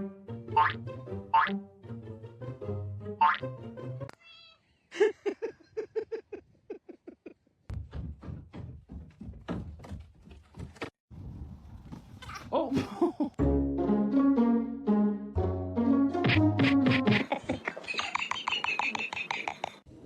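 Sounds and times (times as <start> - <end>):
knocks and thumps: 7.7 - 11.0.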